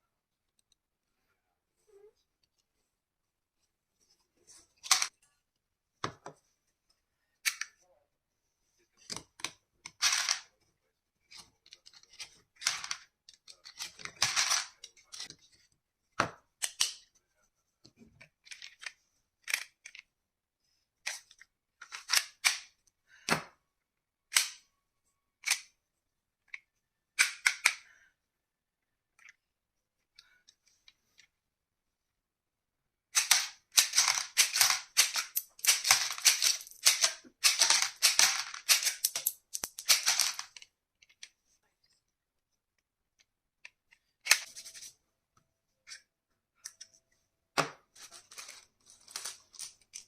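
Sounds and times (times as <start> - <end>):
toy pistol clicks and clacks: 33.2 - 40.2.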